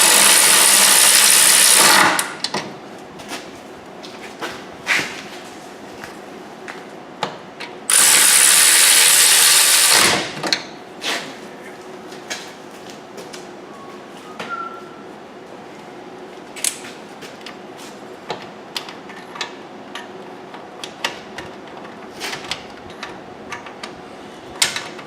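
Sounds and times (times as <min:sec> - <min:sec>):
power wrench running: 0:00.0 - 0:02.4, 0:07.9 - 0:10.4.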